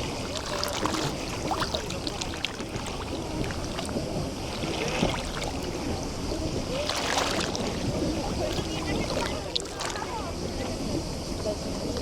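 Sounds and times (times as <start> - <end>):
sea water lapping at shore: 0.0 - 12.0
small splashes and clicks: 0.2 - 5.7, 8.4 - 10.2.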